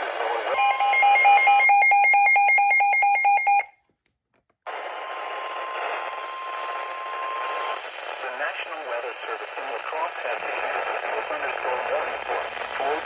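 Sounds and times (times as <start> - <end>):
rapid electronic alert beeping: 0.6 - 3.7
radio static hiss: 6.6 - 13.0.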